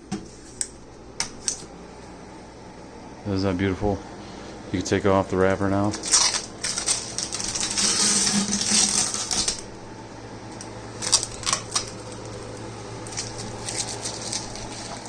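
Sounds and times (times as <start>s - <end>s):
low steady hum: 0.0s - 15.0s
plastic film peeling off: 5.9s - 9.7s, 10.6s - 15.0s.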